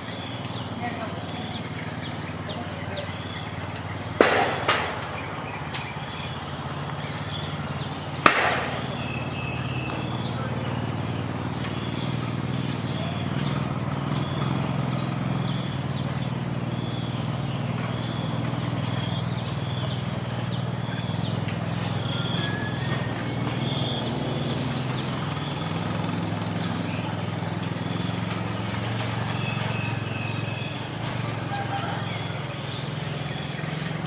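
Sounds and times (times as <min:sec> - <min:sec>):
small birds chirping: 0:00.0 - 0:34.0
sharp knocks: 0:04.2 - 0:06.1, 0:08.2 - 0:10.3.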